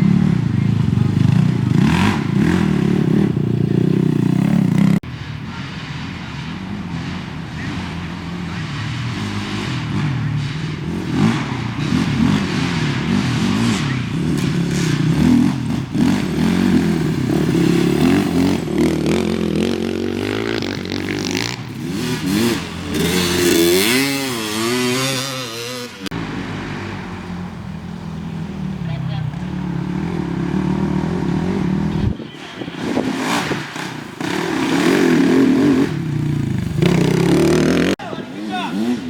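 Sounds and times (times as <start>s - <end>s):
race engines revving hard: 0.0s - 5.0s, 6.4s - 27.1s, 28.0s - 39.0s.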